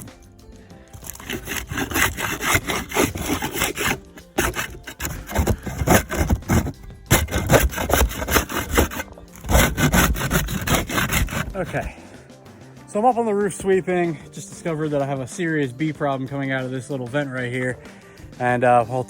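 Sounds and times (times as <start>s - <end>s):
rough scraping on roof: 0.9s - 12.2s.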